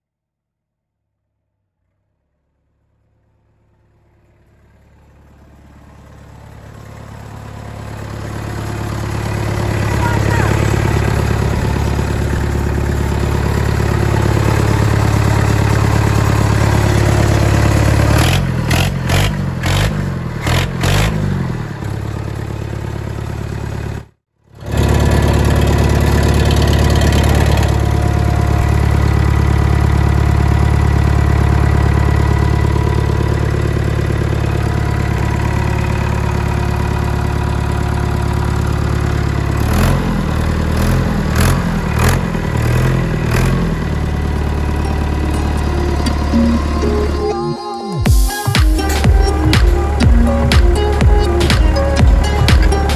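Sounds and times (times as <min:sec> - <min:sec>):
tractor engine running: 0:03.1 - 0:52.9.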